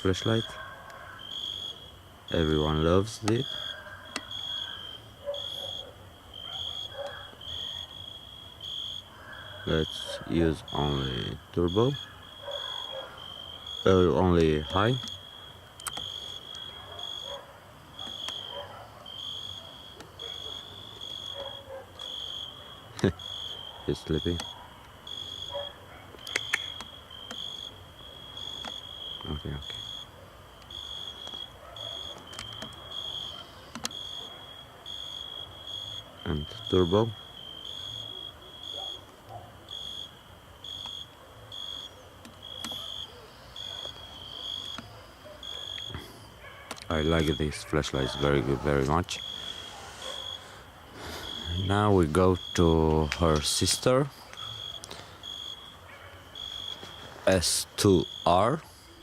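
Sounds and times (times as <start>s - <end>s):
crickets chirping: 0.0s - 59.0s
sharp clicks: 15.8s - 16.7s, 24.2s - 25.0s, 26.2s - 27.6s, 28.4s - 28.9s, 30.6s - 34.1s, 42.2s - 43.0s, 44.6s - 45.0s.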